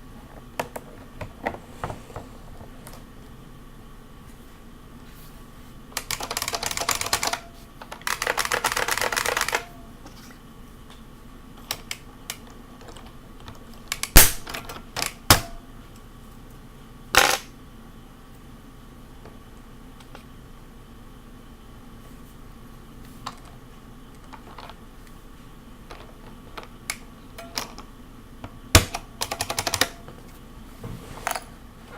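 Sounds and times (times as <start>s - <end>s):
keyboard keys typing: 6.0s - 9.6s.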